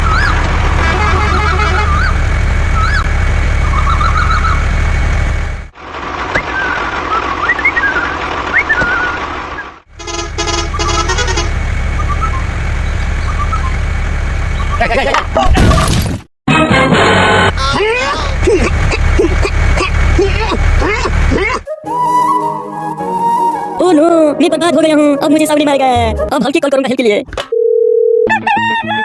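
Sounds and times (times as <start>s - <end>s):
machine engine low rumble: 0.0s - 15.8s, 17.2s - 21.7s
birds chirping: 1.4s - 4.6s, 11.9s - 13.8s, 14.4s - 14.8s
horn-like beeps: 10.0s - 11.6s.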